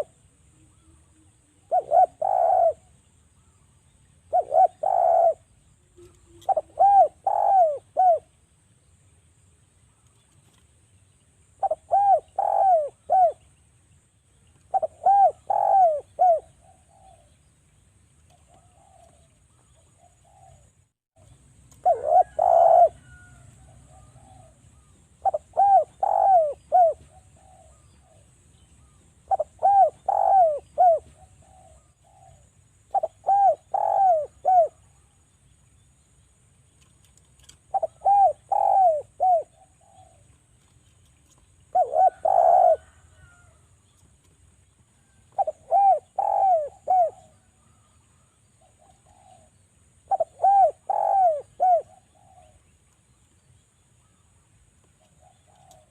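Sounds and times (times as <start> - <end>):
dove cooing: 0.0 - 3.6, 4.3 - 8.3, 11.6 - 13.5, 14.6 - 17.4, 18.3 - 20.8, 21.7 - 35.0, 37.4 - 43.6, 45.0 - 52.8, 55.0 - 55.9.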